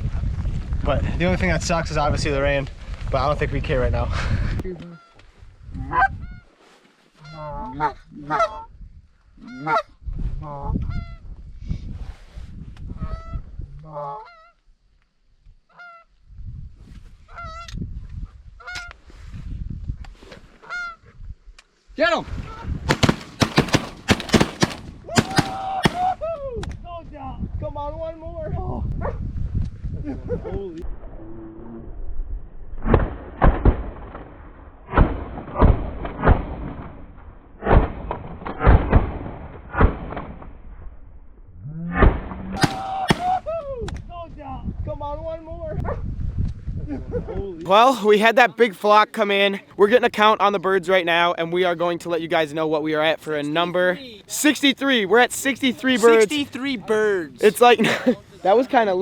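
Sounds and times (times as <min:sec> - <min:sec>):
goose honking: 0:07.2 - 0:08.7, 0:09.4 - 0:09.9, 0:20.6 - 0:21.0
shotguns firing: 0:22.9 - 0:26.2, 0:42.6 - 0:43.5
low rumble: 0:30.8 - 0:37.6.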